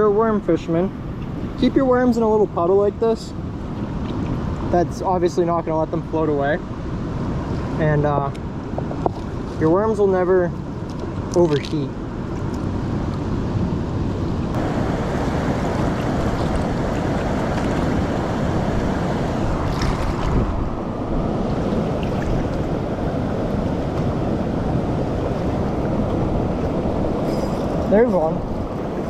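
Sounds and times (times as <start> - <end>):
wind buffeting microphone: 6.7 - 29.0.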